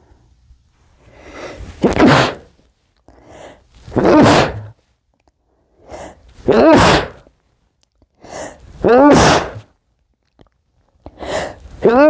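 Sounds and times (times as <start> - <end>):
hitching breaths in: 1.0 - 4.7, 5.4 - 6.4, 8.1 - 8.8, 11.0 - 11.8
man sneezing: 1.8 - 2.5, 3.9 - 4.8, 6.4 - 7.2, 8.8 - 9.7, 11.8 - 12.0.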